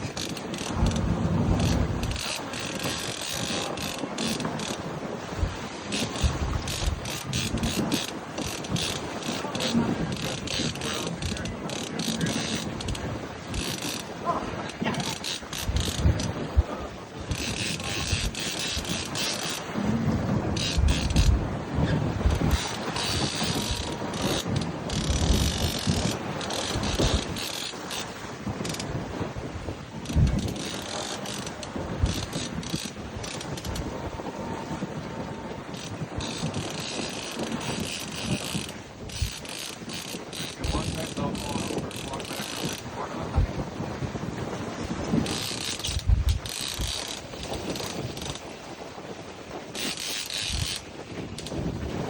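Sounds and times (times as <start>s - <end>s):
wind buffeting microphone: 0.0s - 52.0s
mechanical ratcheting clicks: 0.2s - 1.0s, 1.6s - 4.8s, 5.9s - 14.1s, 15.0s - 16.3s, 17.3s - 19.6s, 22.3s - 28.8s, 30.1s - 33.8s, 35.8s - 42.8s, 45.2s - 48.4s, 49.8s - 50.8s.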